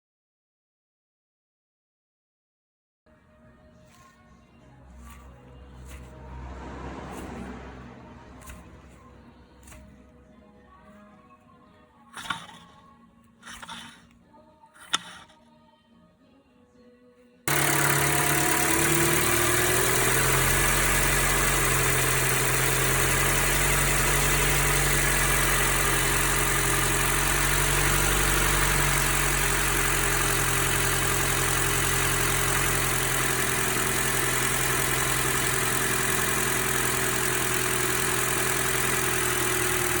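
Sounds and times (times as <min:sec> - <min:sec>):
engine whine: 0:04.5 - 0:10.2, 0:17.5 - 0:40.0
car engine idling: 0:17.5 - 0:40.0.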